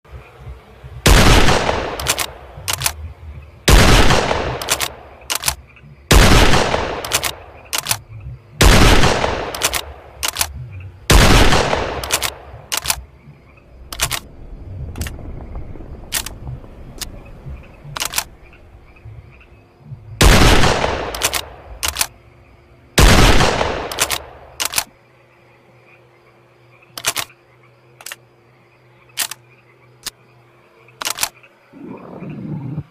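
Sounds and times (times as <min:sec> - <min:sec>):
rifle shots with echo: 0:01.0 - 0:03.0, 0:03.7 - 0:08.0, 0:08.6 - 0:10.5, 0:11.1 - 0:13.0, 0:20.2 - 0:22.1, 0:23.0 - 0:24.8
sharp metallic clicks: 0:01.1 - 0:03.1, 0:03.7 - 0:13.1, 0:13.8 - 0:14.3, 0:14.9 - 0:15.2, 0:16.1 - 0:16.4, 0:17.0 - 0:18.6, 0:20.2 - 0:22.2, 0:23.0 - 0:25.0, 0:26.9 - 0:27.4, 0:28.0 - 0:28.2, 0:29.1 - 0:29.4, 0:31.0 - 0:31.5.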